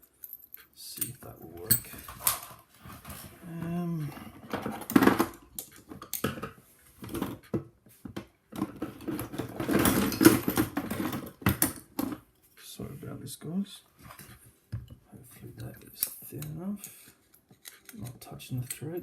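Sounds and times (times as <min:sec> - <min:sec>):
metal tools clinking on padlock: 0:00.0 - 0:02.1
person humming: 0:03.4 - 0:04.2.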